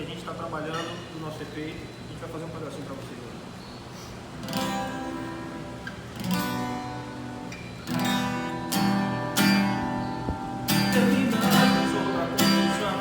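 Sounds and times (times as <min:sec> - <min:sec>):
acoustic guitar strumming chords: 0:04.4 - 0:13.0.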